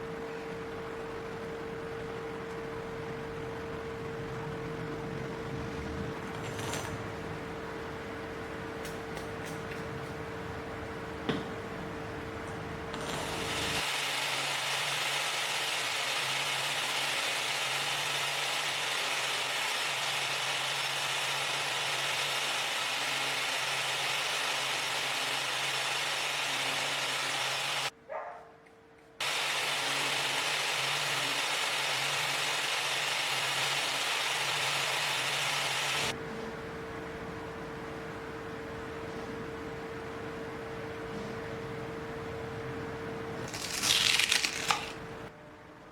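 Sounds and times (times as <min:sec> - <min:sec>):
high-pitched power tool running: 0:13.0 - 0:27.9, 0:29.2 - 0:36.2.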